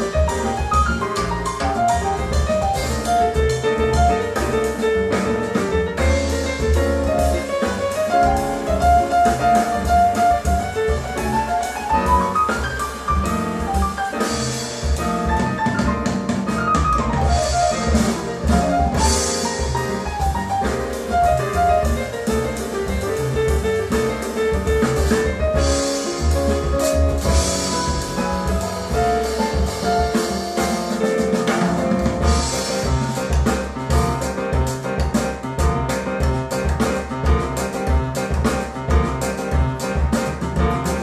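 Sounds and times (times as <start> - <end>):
jazz piano trio: 0.0 - 41.0.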